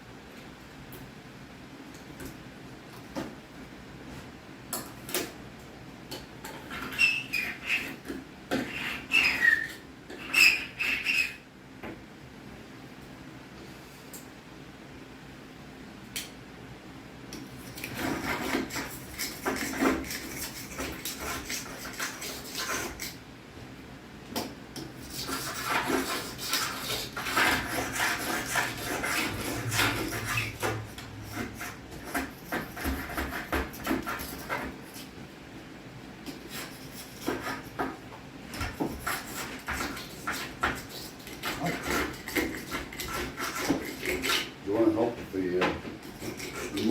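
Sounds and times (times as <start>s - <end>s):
tool scraping out caulk: 6.5s - 11.4s, 17.5s - 23.2s, 24.8s - 35.1s, 36.3s - 44.6s.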